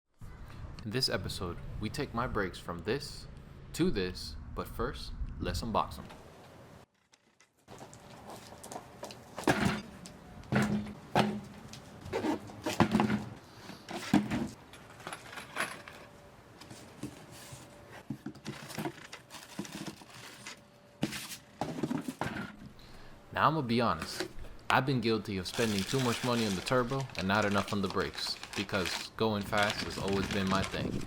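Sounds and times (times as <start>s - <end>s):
cardboard packaging handled: 15.2s - 22.3s, 25.5s - 31.0s.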